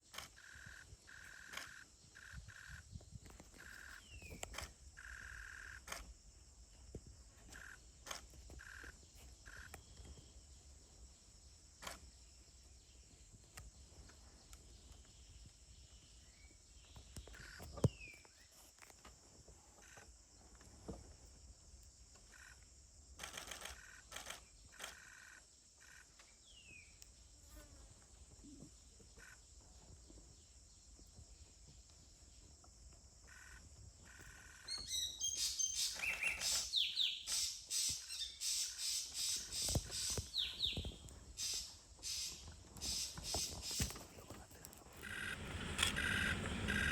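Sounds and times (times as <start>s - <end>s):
insects buzzing: 0.1s - 46.9s
sharp clicks: 5.8s - 6.1s.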